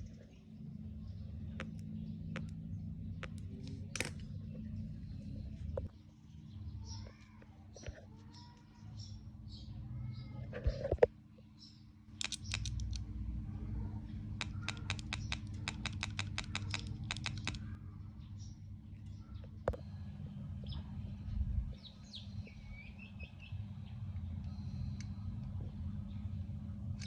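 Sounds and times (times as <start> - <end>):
steady low hum: 0.0 - 27.0
rapid mechanical clicking: 12.2 - 13.1, 14.3 - 17.8
faint bird chirps: 13.5 - 26.4.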